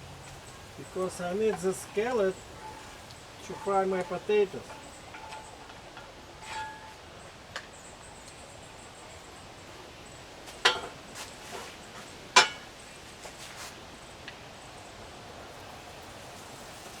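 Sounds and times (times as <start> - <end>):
cookware clinking: 10.6 - 11.0.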